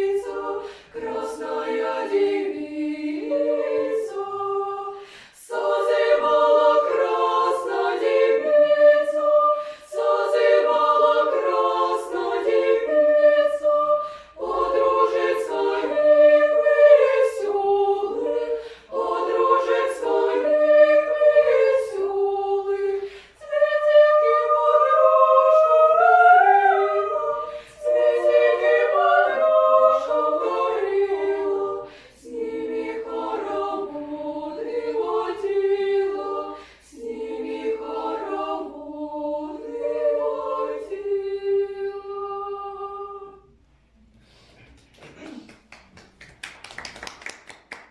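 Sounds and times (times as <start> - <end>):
children's choir singing a cappella: 0.0 - 45.5
singers breathing: 0.6 - 1.0, 4.9 - 5.5, 9.5 - 9.9, 13.9 - 14.4, 18.5 - 19.0, 23.0 - 23.4, 27.4 - 27.8, 31.8 - 32.3, 36.5 - 37.0, 43.8 - 44.9.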